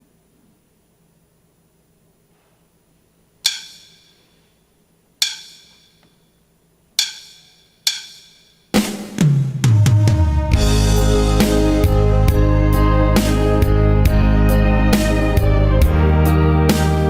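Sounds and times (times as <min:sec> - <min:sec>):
drums: 0:03.4 - 0:04.1, 0:05.2 - 0:05.9, 0:07.0 - 0:17.0
percussive count-in clicks: 0:05.2 - 0:06.1, 0:07.0 - 0:08.7.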